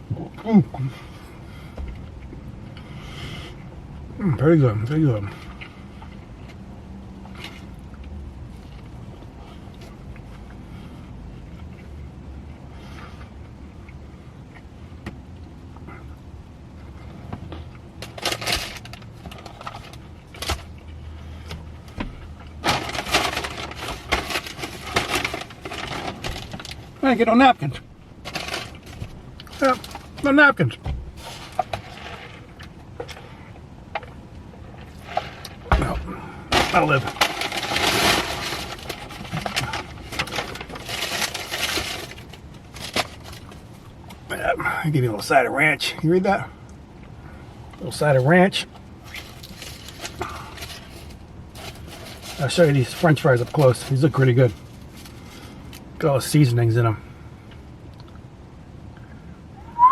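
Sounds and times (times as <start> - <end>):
paper bag crinkling: 22.6 - 26.8, 28.2 - 30.3, 36.5 - 43.7.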